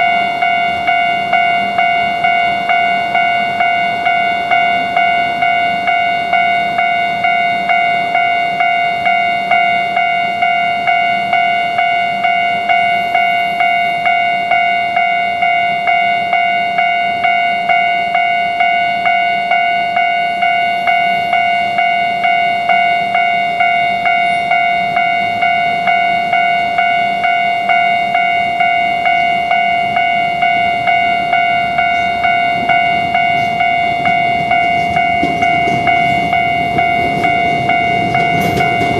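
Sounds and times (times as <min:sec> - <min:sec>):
level-crossing warning bell: 0:00.0 - 0:38.9.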